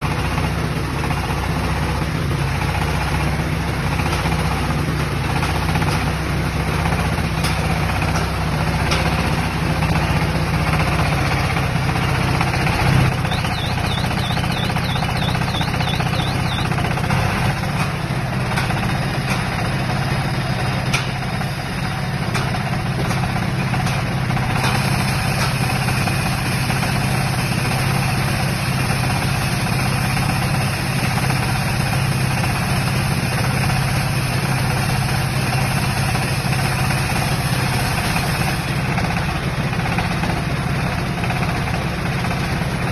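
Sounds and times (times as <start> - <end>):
baling machine drone: 3.6 - 27.4
sharp mechanical clicks and knocks: 5.2 - 6.4, 7.3 - 10.0, 12.3 - 19.8, 20.8 - 21.3, 22.3 - 25.8.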